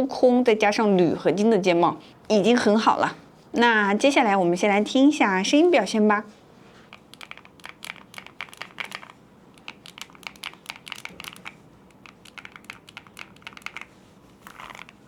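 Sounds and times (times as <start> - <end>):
mechanical keyboard typing: 6.9 - 15.0.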